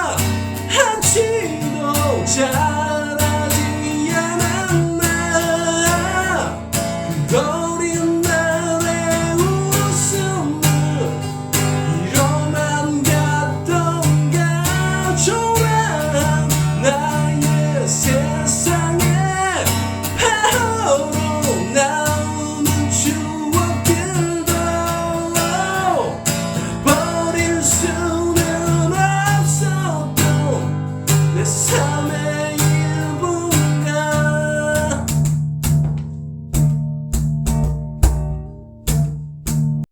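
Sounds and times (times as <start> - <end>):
pop ballad with guitar: 0.0 - 39.8.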